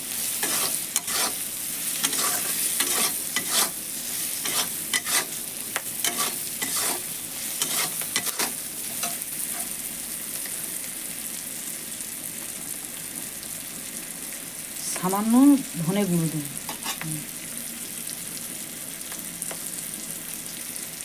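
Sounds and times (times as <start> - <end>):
prawns sizzling in oil: 0.0 - 21.0
spatula clacking against pan: 0.4 - 1.4, 2.0 - 3.8, 4.4 - 7.0, 7.6 - 9.7.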